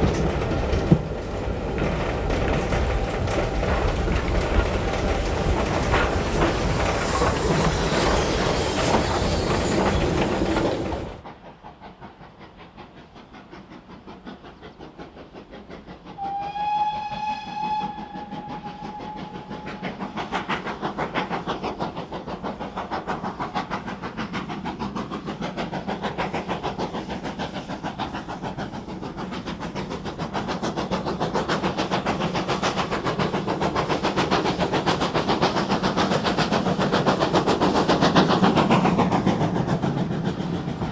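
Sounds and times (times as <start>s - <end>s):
steam locomotive running: 0.0s - 40.9s
steam train rhythmic beats: 0.0s - 40.9s
steam whistle blast: 16.2s - 19.8s.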